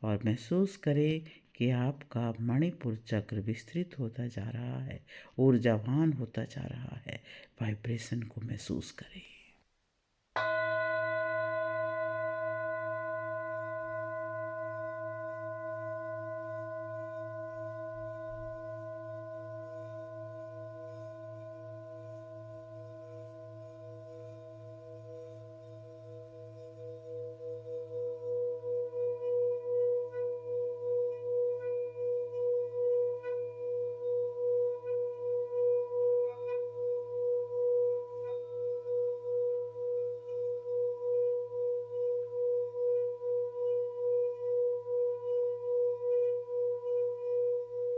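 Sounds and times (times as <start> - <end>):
singing bowl ringing: 10.4 - 47.9.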